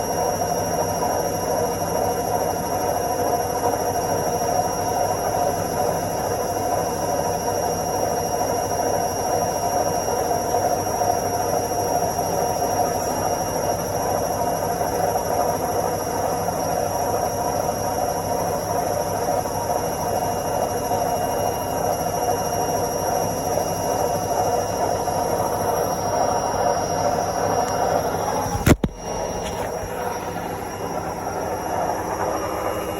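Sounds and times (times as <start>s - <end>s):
washing machine spinning: 0.0s - 32.9s
sharp click: 28.5s - 29.8s.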